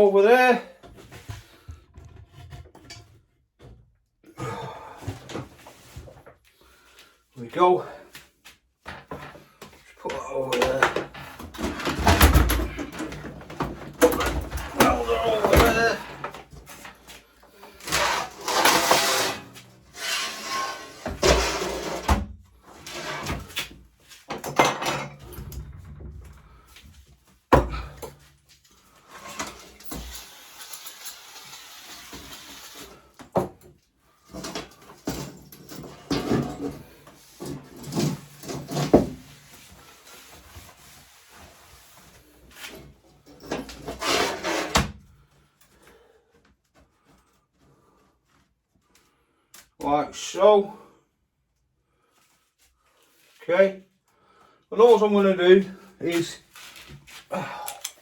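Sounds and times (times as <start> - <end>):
rubbing or scraping: 17.7 - 23.6, 35.9 - 44.9.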